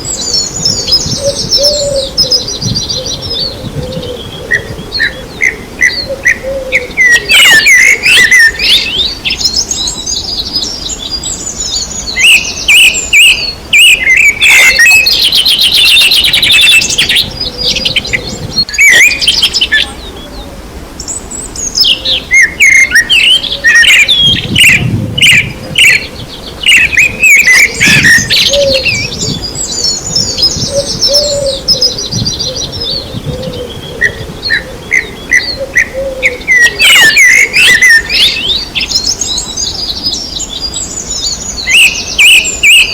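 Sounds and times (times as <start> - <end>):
songbirds chirping and singing: 0.0 - 42.9
fast high bird trill: 41.0 - 42.9.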